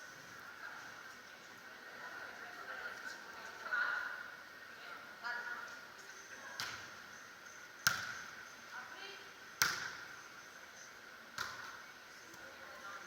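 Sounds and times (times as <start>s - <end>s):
hands slapping volleyball: 6.6s - 6.9s, 7.8s - 8.2s, 9.6s - 10.1s, 11.4s - 12.5s.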